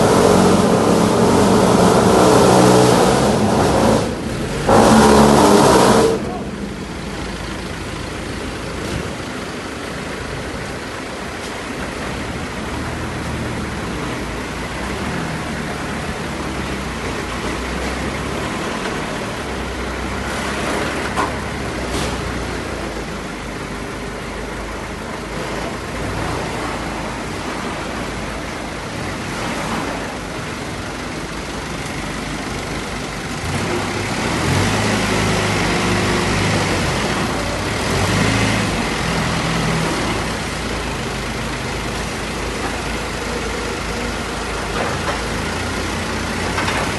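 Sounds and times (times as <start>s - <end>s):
machinery and road noise: 0.0s - 46.9s
vehicle engine running: 0.0s - 46.9s.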